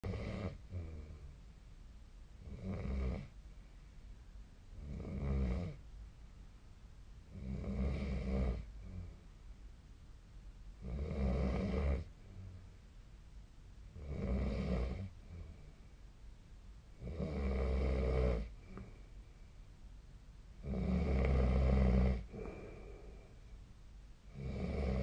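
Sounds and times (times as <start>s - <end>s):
person snoring: 0.0s - 1.2s, 4.8s - 5.8s, 7.3s - 9.2s, 10.8s - 12.1s, 14.0s - 15.6s, 17.0s - 18.9s, 20.6s - 23.4s, 24.3s - 25.0s
quiet breathing: 0.0s - 1.7s, 2.4s - 4.9s, 7.3s - 9.7s, 12.0s - 13.0s, 13.9s - 16.2s, 16.9s - 19.9s, 20.6s - 25.0s.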